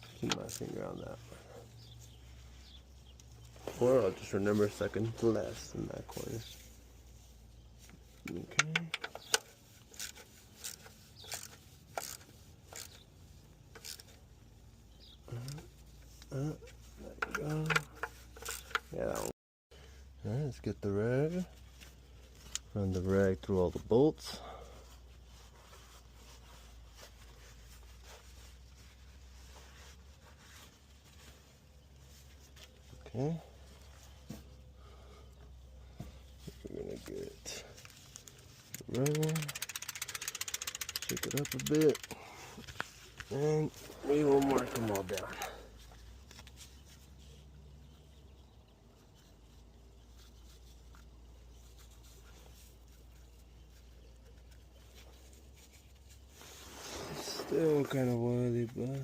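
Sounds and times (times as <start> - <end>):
rag rubbing on metal: 38.5 - 42.2, 42.9 - 45.6.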